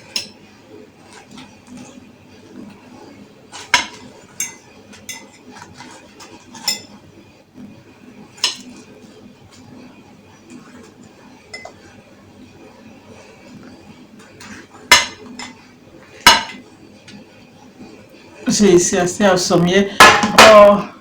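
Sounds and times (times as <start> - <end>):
cutlery clinking against dishes: 3.6 - 7.0, 8.4 - 8.8, 11.5 - 11.8, 14.4 - 15.6, 16.2 - 16.6.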